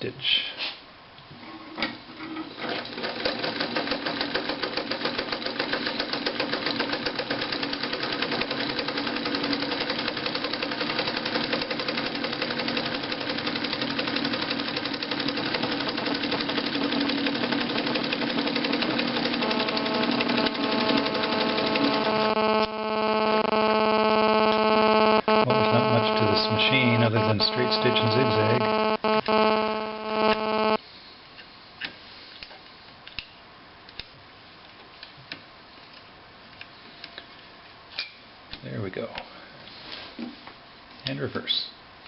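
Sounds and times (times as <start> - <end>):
sewing machine stitching: 2.6 - 22.1
sewing machine whine: 2.6 - 30.8.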